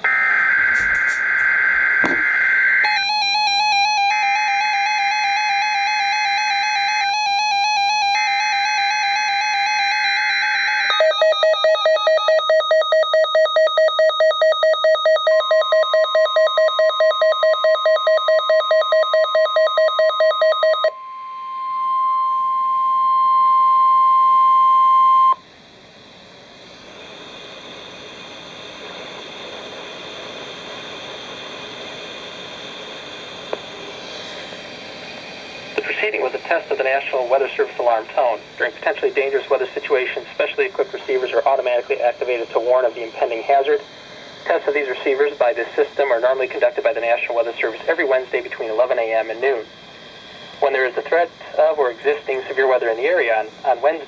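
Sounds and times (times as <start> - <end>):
steady alarm tone: 0.0 - 39.6
rapid pulsing beeps: 2.2 - 21.5.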